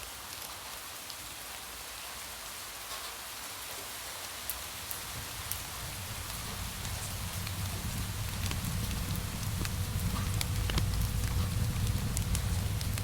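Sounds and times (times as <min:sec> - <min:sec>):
rain falling on a surface: 0:00.0 - 0:13.0
low rumble: 0:04.8 - 0:13.0.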